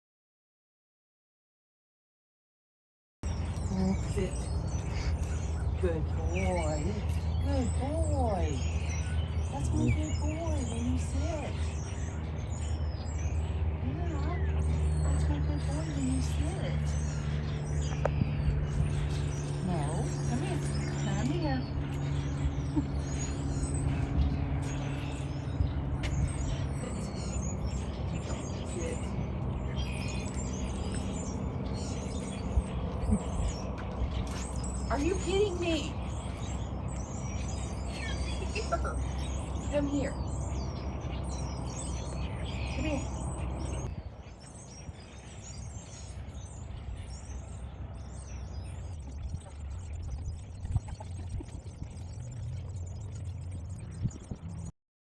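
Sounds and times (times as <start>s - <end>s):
birds chirping: 3.2s - 54.7s
low steady rumble: 3.2s - 54.8s.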